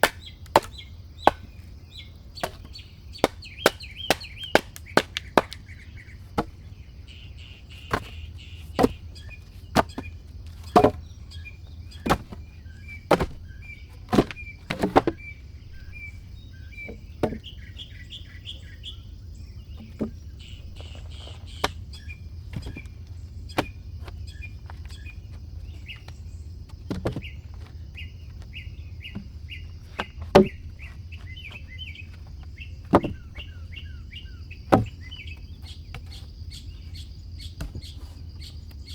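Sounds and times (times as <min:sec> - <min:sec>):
small birds chirping: 0:00.0 - 0:38.9
tool knocking on wood: 0:08.8 - 0:09.1, 0:09.8 - 0:11.1, 0:12.0 - 0:12.5, 0:13.1 - 0:16.2, 0:30.0 - 0:30.6, 0:32.9 - 0:33.5, 0:34.7 - 0:35.1.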